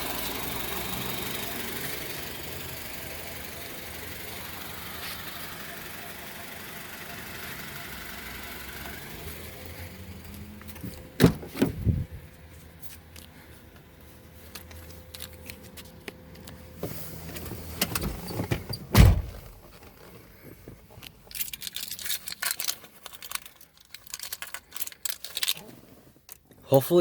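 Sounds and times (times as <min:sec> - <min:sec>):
loud thump: 0:19.0 - 0:19.5
small clicks and rattles: 0:21.0 - 0:25.7.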